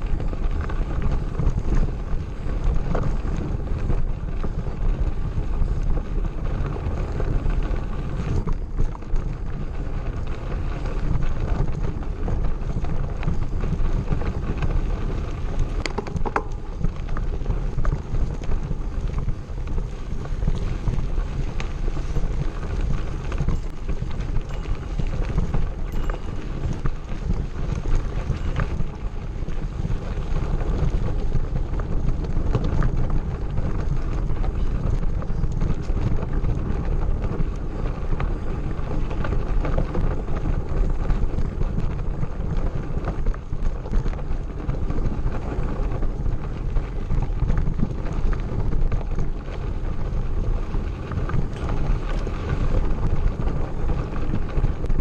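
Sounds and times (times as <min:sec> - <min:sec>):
bike rattling on gravel road: 0:00.0 - 0:55.0
wind buffeting microphone: 0:00.0 - 0:55.0.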